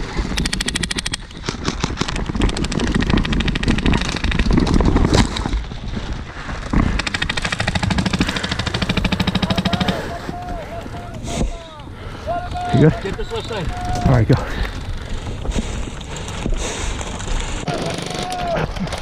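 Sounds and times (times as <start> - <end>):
airsoft guns firing bursts: 6.9 - 10.3, 17.5 - 19.0.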